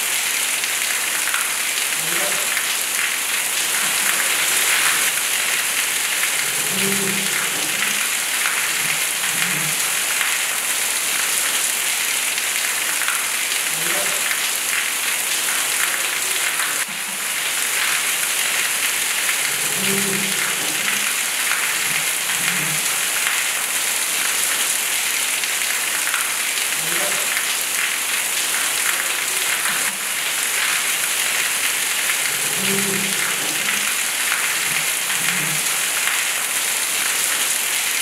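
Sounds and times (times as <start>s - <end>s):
steady dense rain: 0.0s - 38.0s.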